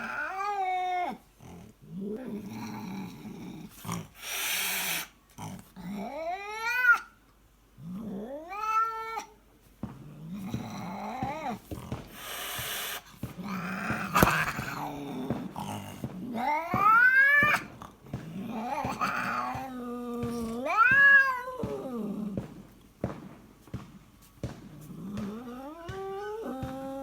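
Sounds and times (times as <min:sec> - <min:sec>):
cat meow-like wails: 0:00.0 - 0:01.2, 0:06.0 - 0:07.1, 0:08.3 - 0:09.4, 0:13.4 - 0:15.6, 0:16.2 - 0:17.8, 0:18.4 - 0:22.4, 0:25.2 - 0:27.0
cat snoring: 0:10.0 - 0:20.9.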